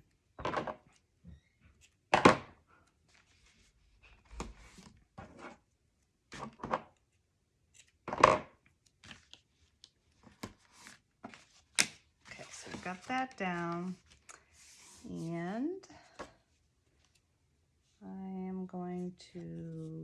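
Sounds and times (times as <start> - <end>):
paper rustling: 8.8 - 15.3.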